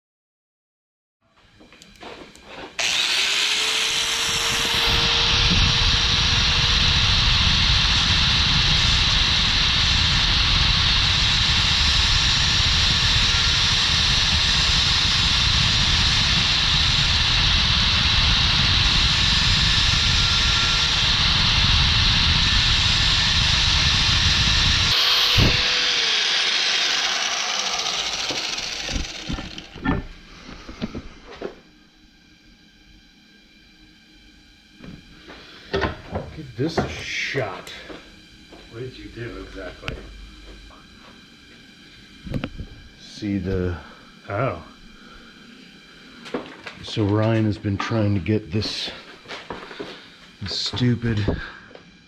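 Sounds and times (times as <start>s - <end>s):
power tool motor whining: 2.8s - 31.6s.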